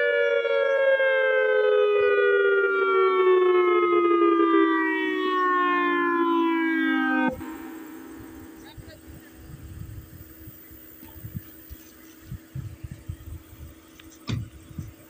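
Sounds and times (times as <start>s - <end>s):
warning siren sliding down: 0.0s - 9.4s.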